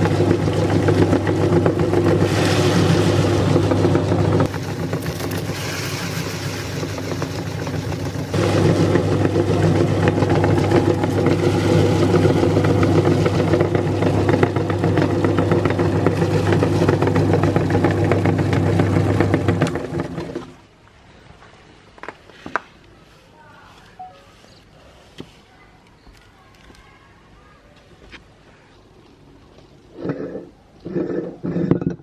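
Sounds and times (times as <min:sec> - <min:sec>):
crackling of crunchy snacks grinding: 0:04.5 - 0:08.4
electric meat grinder motor hum: 0:04.5 - 0:14.2.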